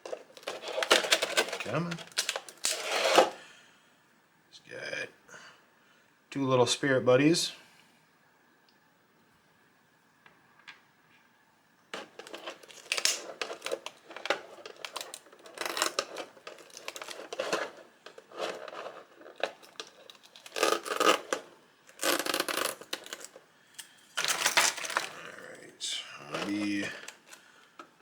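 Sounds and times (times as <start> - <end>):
plastic packaging crinkling and tearing: 0.0 - 3.4, 12.0 - 23.4, 24.2 - 25.3, 26.3 - 28.0.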